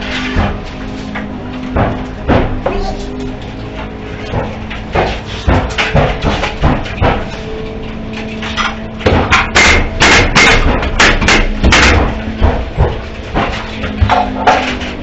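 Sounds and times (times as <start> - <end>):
steady low hum: 0.0 - 15.0
hammer knocking on wood: 4.3 - 7.3, 9.0 - 14.6.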